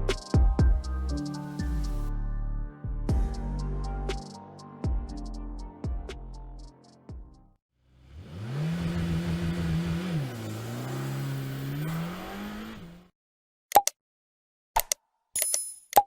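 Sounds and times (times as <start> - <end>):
car engine running: 8.1 - 13.1.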